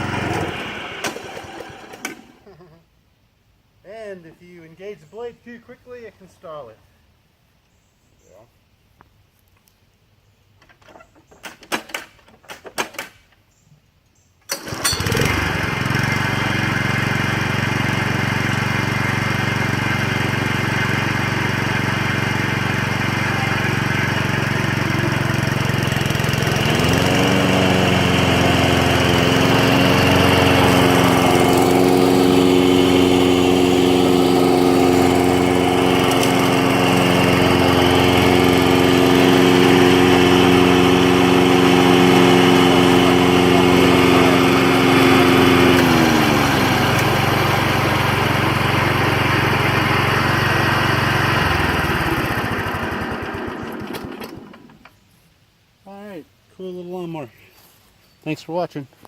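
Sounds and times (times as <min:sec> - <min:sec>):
lawn mower engine running: 0:00.0 - 0:02.5, 0:14.5 - 0:55.0.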